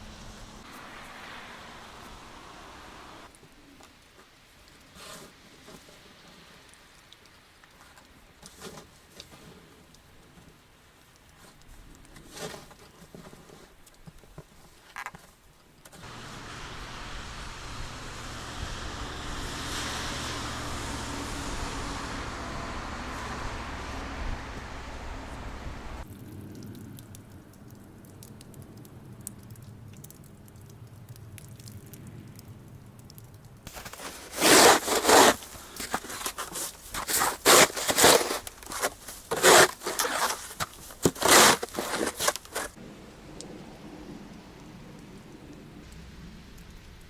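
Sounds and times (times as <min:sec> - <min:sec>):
water drops falling: 0:26.0 - 0:33.7
shovel scraping wet snow: 0:33.7 - 0:42.8.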